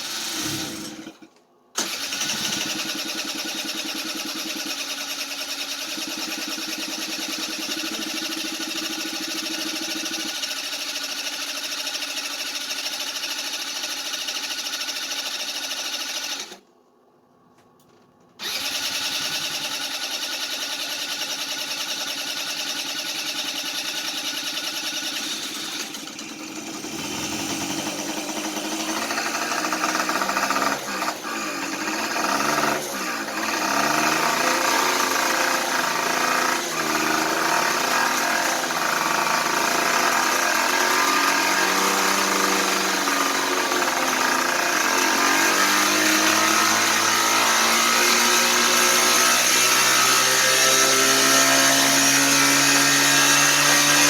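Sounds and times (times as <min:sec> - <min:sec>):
scooter engine running and revving: 0:00.0 - 0:01.2, 0:01.8 - 0:16.6, 0:18.4 - 0:54.0.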